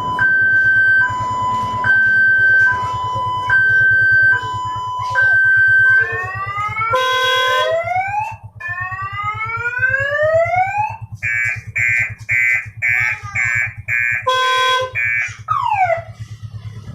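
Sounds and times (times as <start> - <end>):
engine idling: 0.0 - 16.9
multi-tone vehicle horn: 5.8 - 8.0, 11.2 - 16.1.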